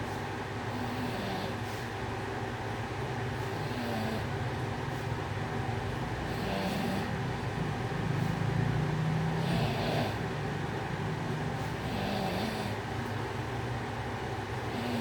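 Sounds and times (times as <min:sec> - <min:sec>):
man snoring: 0:03.6 - 0:04.3, 0:06.2 - 0:07.2, 0:09.2 - 0:10.4, 0:11.6 - 0:12.8, 0:14.6 - 0:15.0.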